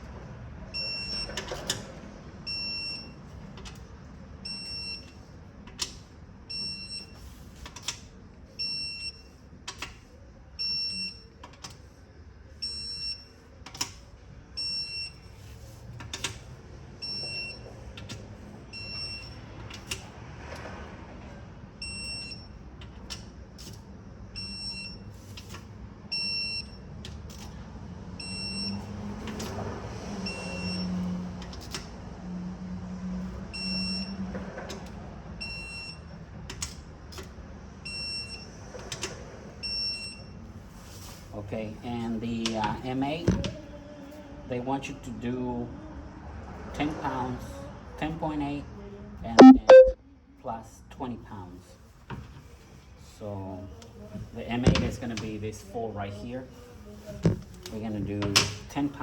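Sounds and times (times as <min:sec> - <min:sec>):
torque wrench high beeps: 0:49.4 - 0:50.0.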